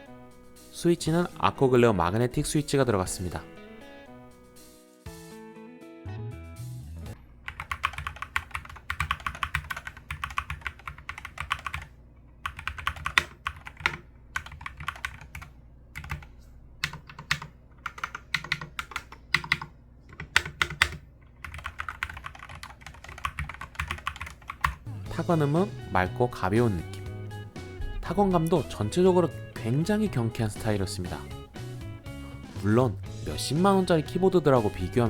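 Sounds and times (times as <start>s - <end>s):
keyboard typing: 7.4s - 24.9s.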